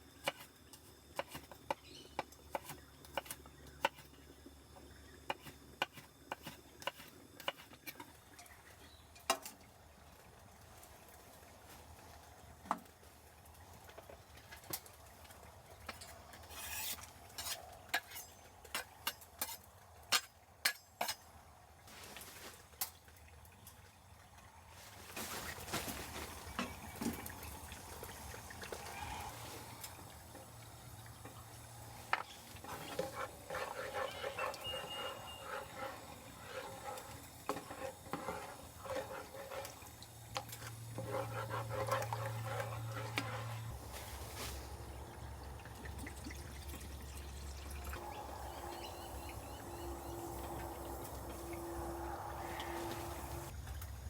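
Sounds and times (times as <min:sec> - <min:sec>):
utensils clinking on cookware: 0:15.9 - 0:21.2, 0:32.0 - 0:39.8
food frying in a pan: 0:26.3 - 0:53.6.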